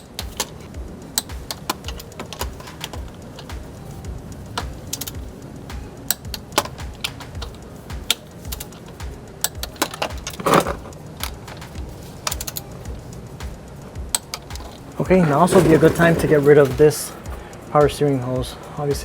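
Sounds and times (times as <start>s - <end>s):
ratchet wrench clicking: 0.0s - 18.1s
metal clatter: 9.8s - 12.6s, 14.3s - 17.4s.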